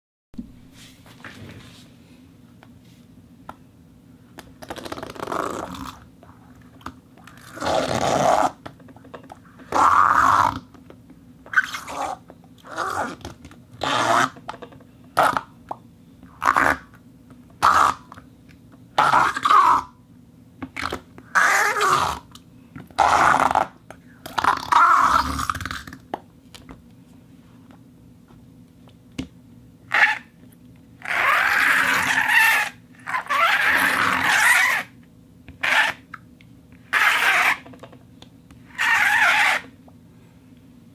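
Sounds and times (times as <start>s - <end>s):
rubber friction squeaks and groans: 4.6s - 6.0s, 7.4s - 8.6s, 9.6s - 10.8s, 11.5s - 15.4s, 16.4s - 16.9s, 17.6s - 18.2s, 20.8s - 22.3s, 23.0s - 26.0s, 29.9s - 30.3s, 31.0s - 35.0s, 35.6s - 36.1s, 36.8s - 37.9s, 38.6s - 39.7s.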